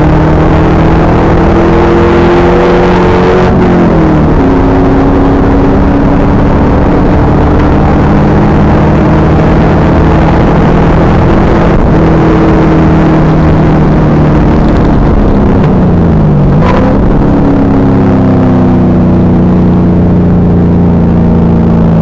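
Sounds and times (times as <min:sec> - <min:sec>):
car engine running hard: 0:00.0 - 0:22.0
road and wind noise: 0:00.0 - 0:22.0.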